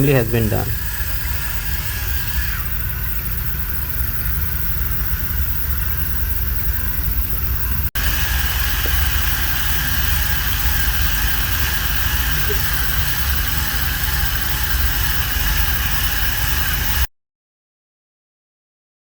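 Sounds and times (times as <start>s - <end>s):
small electric motor whining: 0.0s - 17.1s.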